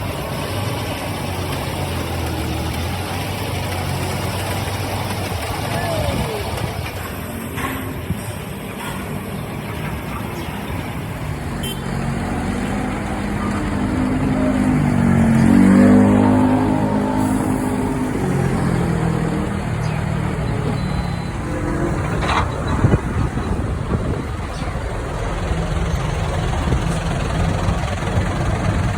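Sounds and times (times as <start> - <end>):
vehicle engines running: 0.0 - 28.9
vehicle passing by: 0.0 - 28.9.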